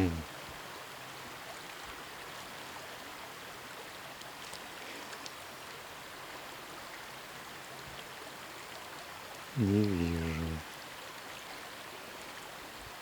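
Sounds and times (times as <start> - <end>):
faint ticks: 4.2 - 5.4, 8.7 - 10.4.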